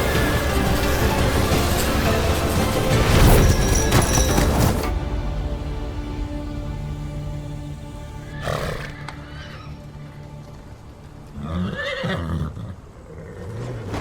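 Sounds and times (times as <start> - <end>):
background music: 0.0 - 13.5
horse whinnying: 8.4 - 9.8, 11.4 - 14.0.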